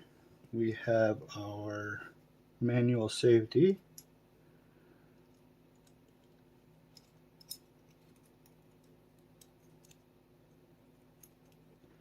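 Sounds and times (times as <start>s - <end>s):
faint low hum: 0.0s - 12.0s
small metal parts clicking: 5.3s - 10.1s, 11.2s - 11.6s.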